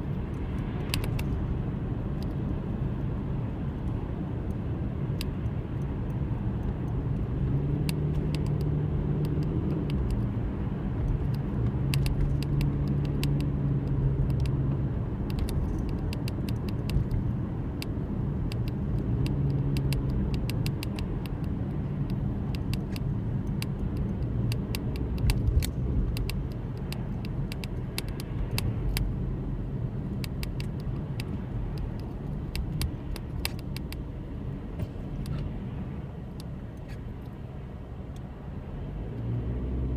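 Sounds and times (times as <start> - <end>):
car engine drone: 0.0 - 39.9
sharp ticks: 0.1 - 1.4, 3.8 - 10.4, 11.0 - 29.2, 30.1 - 34.1.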